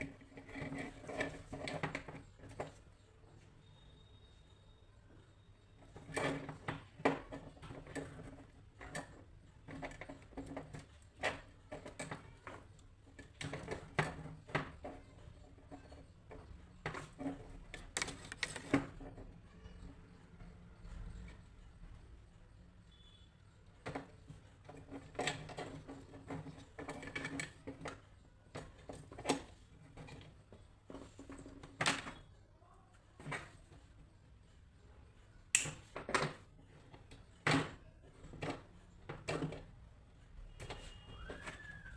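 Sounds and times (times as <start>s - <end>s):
small plastic parts clicking: 5.8s - 19.8s.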